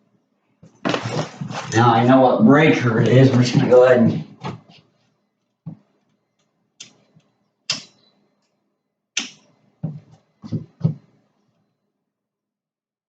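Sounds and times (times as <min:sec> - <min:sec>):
sharp clicks and knocks: 0:06.8 - 0:08.0.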